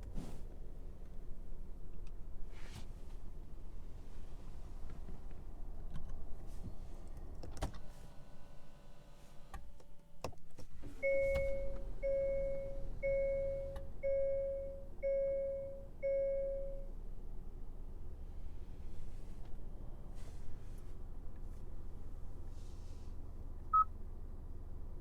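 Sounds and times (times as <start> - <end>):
car warning chime beeping: 11.0 - 16.9, 23.7 - 23.9.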